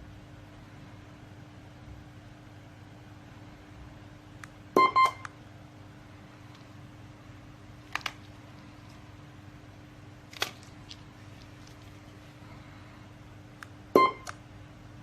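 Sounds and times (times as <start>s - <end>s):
low electrical hum: 0.0s - 15.0s
short electronic beeps: 4.8s - 5.3s, 14.0s - 14.3s.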